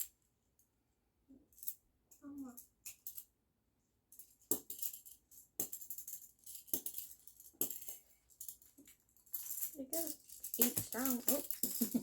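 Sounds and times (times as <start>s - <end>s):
plastic blocks clacking and rattling: 4.2s - 12.0s.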